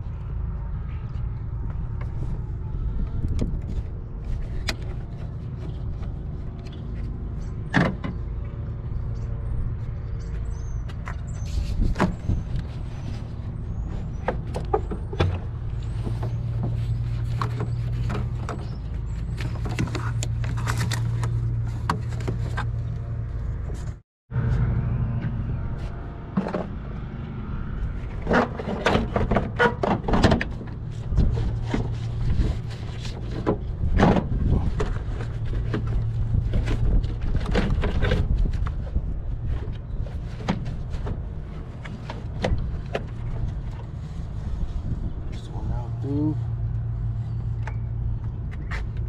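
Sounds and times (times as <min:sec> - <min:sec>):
low drone: 0:24.3 - 0:28.8.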